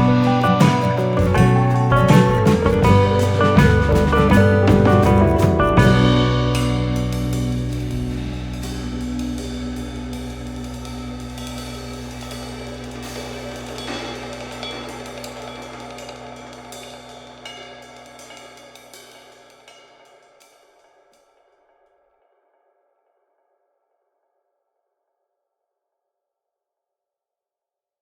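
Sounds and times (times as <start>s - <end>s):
background music with cymbals: 0.0s - 21.8s.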